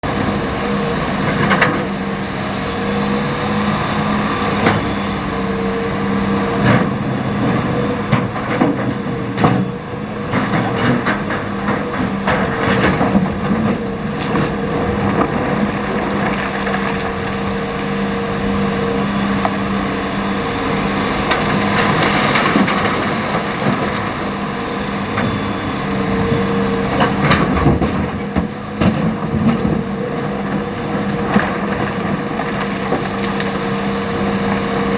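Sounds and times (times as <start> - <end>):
excavator diesel engine running: 0.0 - 34.9
bucket clanking on rocks: 6.6 - 16.6.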